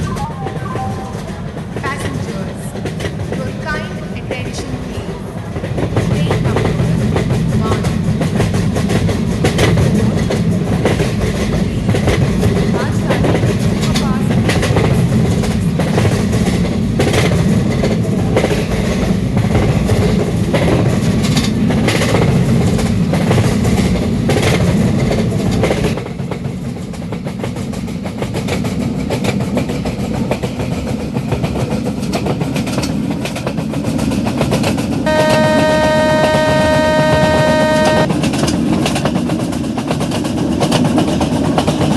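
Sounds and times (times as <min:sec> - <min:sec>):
train rumbling on rails: 0:00.0 - 0:41.9
wheels clicking over rail joints: 0:00.0 - 0:41.9
steady pitched tone: 0:35.1 - 0:38.1.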